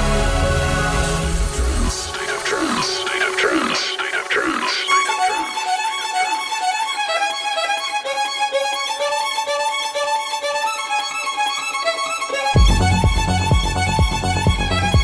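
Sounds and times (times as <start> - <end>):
high melodic synth lead: 0.1 - 6.5, 12.6 - 15.0
heavy bass and kick drum: 12.6 - 15.0.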